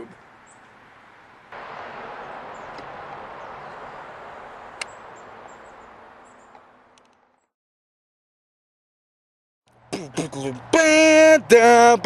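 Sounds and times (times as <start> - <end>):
steady rushing hiss: 1.6 - 7.0.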